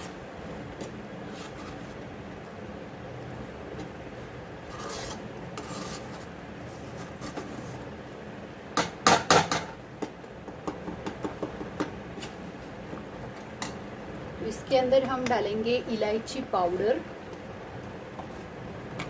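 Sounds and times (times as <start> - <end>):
spatula scraping a cooking pan: 4.6 - 7.9.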